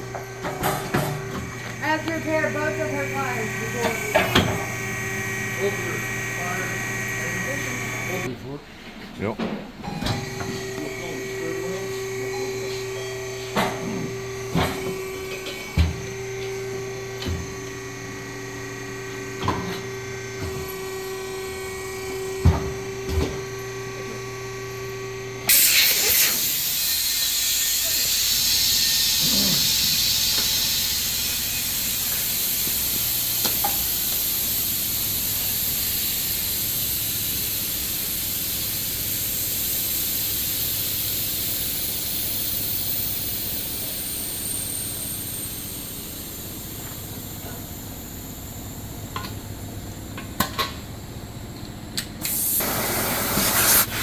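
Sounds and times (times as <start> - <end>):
compressed air hissing: 0.0 - 8.3, 25.5 - 49.2, 52.2 - 54.0
tire changer humming: 0.0 - 8.4, 9.9 - 53.3.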